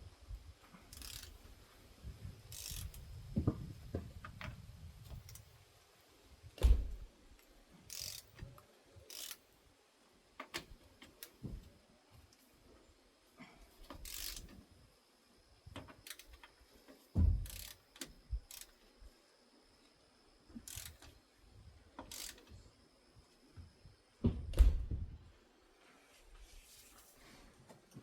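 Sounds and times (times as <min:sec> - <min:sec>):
heavy thumps: 0:06.6 - 0:07.1, 0:17.1 - 0:17.7.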